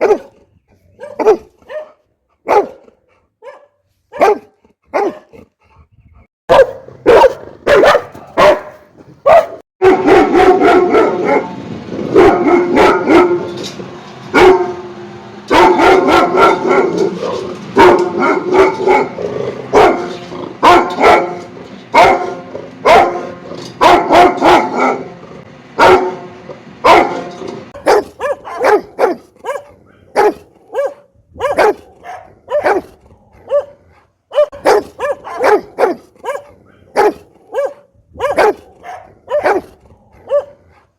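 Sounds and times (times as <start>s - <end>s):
dog barking: 0.0s - 0.4s, 1.0s - 5.4s, 6.5s - 13.5s, 14.4s - 14.8s, 15.5s - 25.1s, 25.8s - 40.9s.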